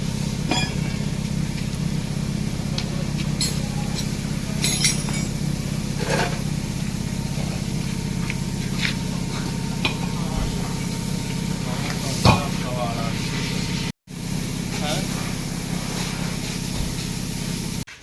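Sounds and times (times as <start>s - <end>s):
steady low hum: 0.0s - 17.9s
hand tools clinking on metal: 3.4s - 5.4s.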